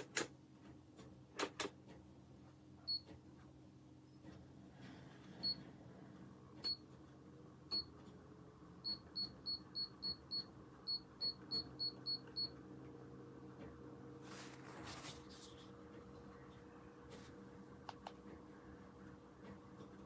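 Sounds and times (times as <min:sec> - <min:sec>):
steady low hum: 0:02.0 - 0:20.0.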